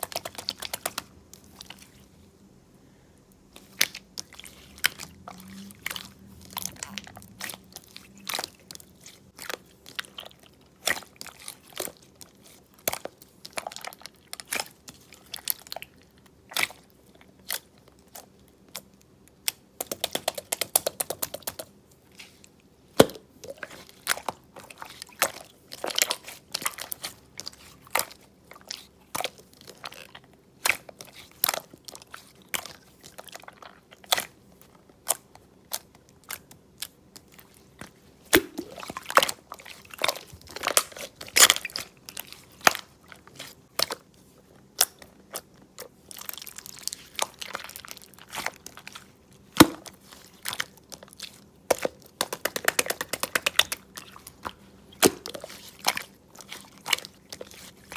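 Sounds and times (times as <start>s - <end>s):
slime clicking and popping: 19.4s - 21.7s, 51.7s - 54.2s.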